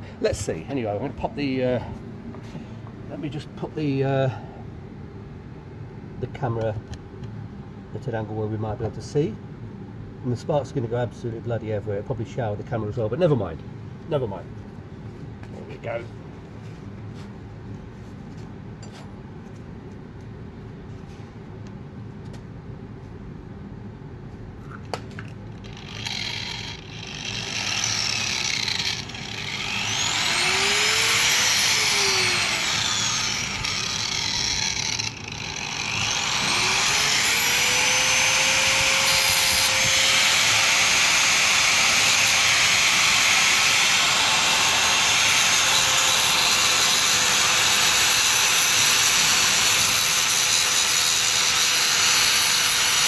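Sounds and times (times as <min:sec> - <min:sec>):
angle grinder whine: 0:25.6 - 0:53.0
grinder cutting steel: 0:25.6 - 0:53.0.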